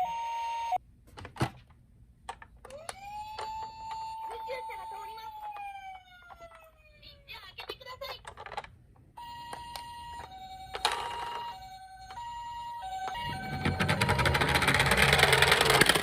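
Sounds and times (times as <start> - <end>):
toy two-tone sirens: 0.0 - 0.8, 2.6 - 7.5, 9.2 - 16.0
rattling rumble: 13.0 - 16.0.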